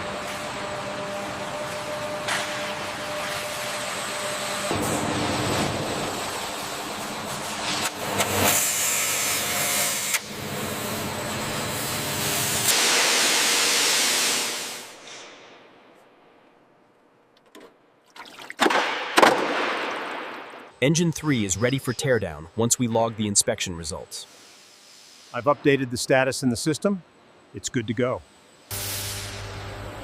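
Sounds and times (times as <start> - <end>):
rush of hissing air or spray: 12.6 - 15.3, 24.2 - 25.4, 28.7 - 29.4.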